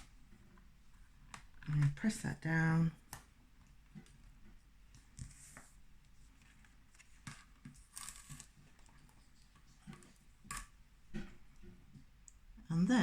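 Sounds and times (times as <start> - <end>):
paper rustle: 5.2 - 10.0.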